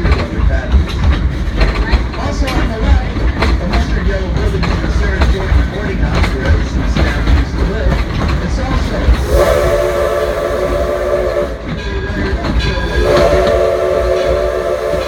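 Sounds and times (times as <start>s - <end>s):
low rumble of moving train: 0.0s - 15.0s
steam locomotive whistle blasts: 9.2s - 11.9s, 12.7s - 15.0s.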